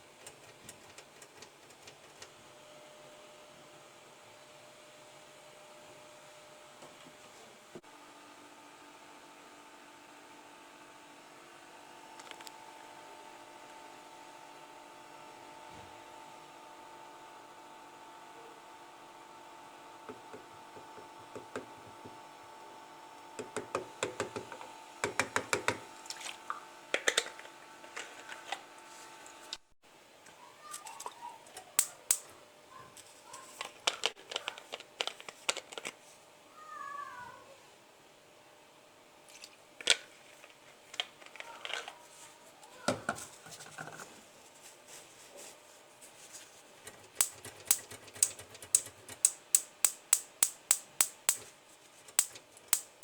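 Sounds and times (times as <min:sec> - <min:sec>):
gas stove igniter clicking: 0:31.8 - 0:32.3, 0:46.9 - 0:51.5, 0:52.2 - 0:53.0.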